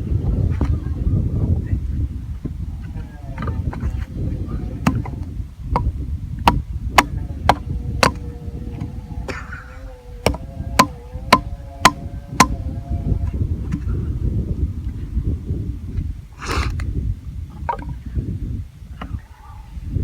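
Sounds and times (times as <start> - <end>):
wind rumbling on microphone: 0.0 - 20.0
sharp striking blows: 10.3 - 12.6.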